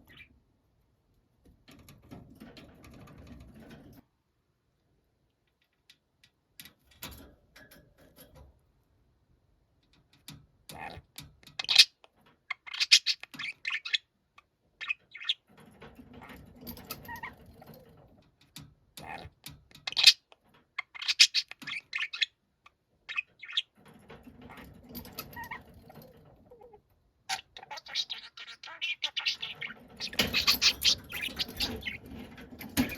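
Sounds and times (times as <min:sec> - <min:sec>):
budgerigar calling: 0:20.8 - 0:22.3, 0:27.3 - 0:32.0.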